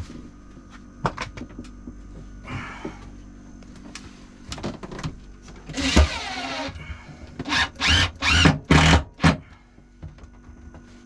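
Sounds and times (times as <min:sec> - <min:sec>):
small electric motor whirring: 0:07.5 - 0:08.9.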